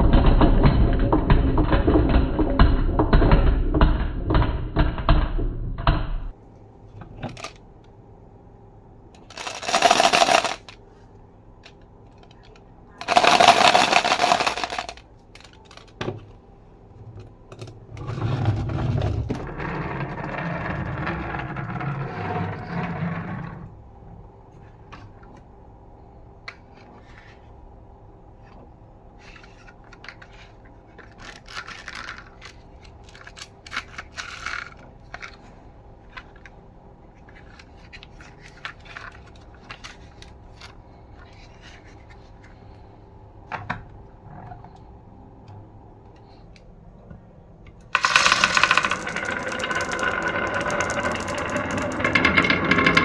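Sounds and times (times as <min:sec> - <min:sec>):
marbles rolling rumble: 0:00.0 - 0:06.4, 0:09.2 - 0:10.8, 0:13.0 - 0:16.0, 0:17.5 - 0:23.9, 0:29.2 - 0:36.5, 0:47.9 - 0:53.0
marbles clicking against track: 0:09.3 - 0:10.7, 0:13.0 - 0:16.0, 0:31.2 - 0:35.4, 0:47.9 - 0:53.0.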